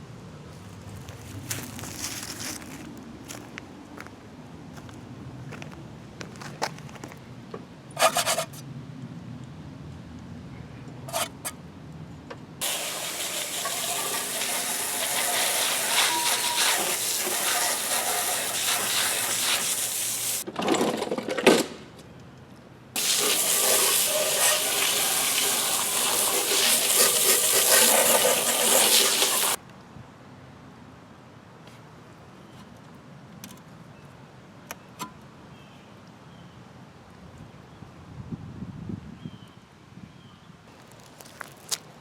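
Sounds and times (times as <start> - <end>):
hissing spray from nozzle: 12.6 - 20.4, 23.0 - 29.6.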